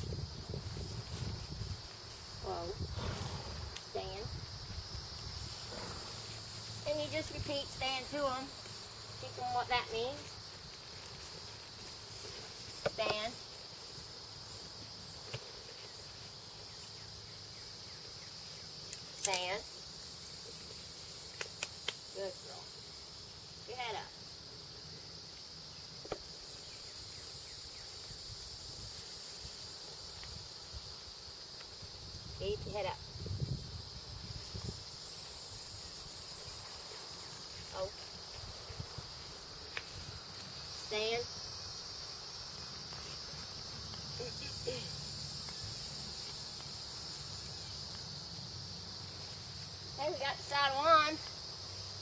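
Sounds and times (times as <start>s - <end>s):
high-pitched insect chorus: 0.0s - 52.0s.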